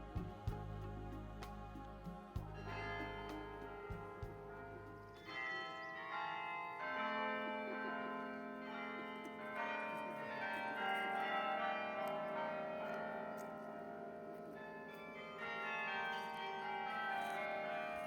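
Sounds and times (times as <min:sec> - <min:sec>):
carillon bells playing melody: 0:04.5 - 0:13.4, 0:14.6 - 0:18.0.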